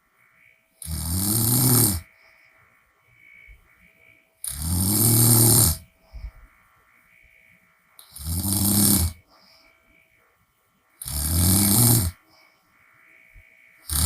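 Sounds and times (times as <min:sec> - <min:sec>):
woman snoring: 0:00.8 - 0:02.1, 0:04.4 - 0:05.9, 0:08.0 - 0:09.2, 0:11.0 - 0:12.2.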